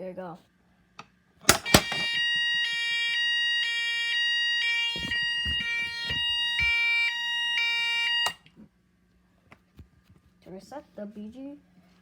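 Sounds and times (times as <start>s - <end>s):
two-pitch electronic fire alarm: 1.5s - 8.4s.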